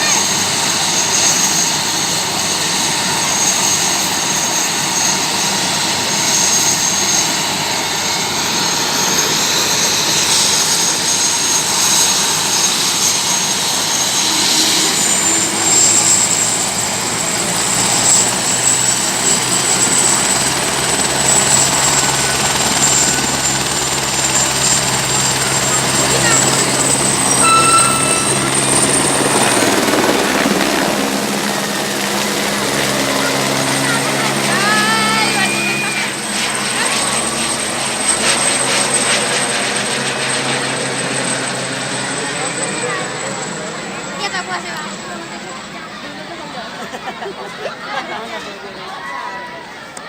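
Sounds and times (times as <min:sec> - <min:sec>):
helicopter rotor and engine: 0:00.0 - 0:50.0
thin high whine: 0:25.3 - 0:30.7, 0:32.3 - 0:38.0.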